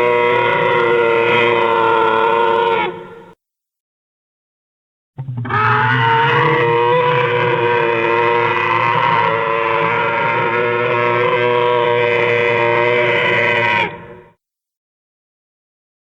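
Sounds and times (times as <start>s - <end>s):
dinosaur roar: 0.0s - 3.2s, 5.2s - 14.3s.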